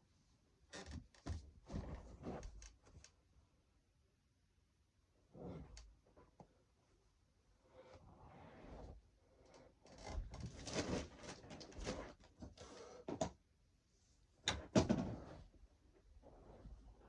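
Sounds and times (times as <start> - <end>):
rustling and clattering: 9.9 - 13.2.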